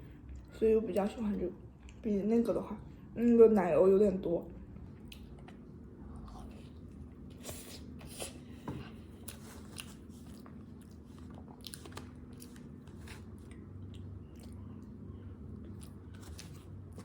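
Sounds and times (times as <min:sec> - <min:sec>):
person chewing food: 0:04.7 - 0:17.0.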